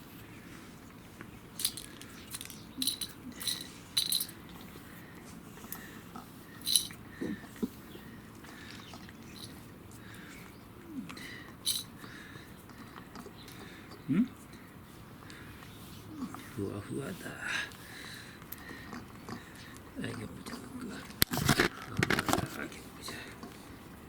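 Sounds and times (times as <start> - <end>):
kibble clinking against bowl: 1.6 - 4.4, 11.7 - 11.9.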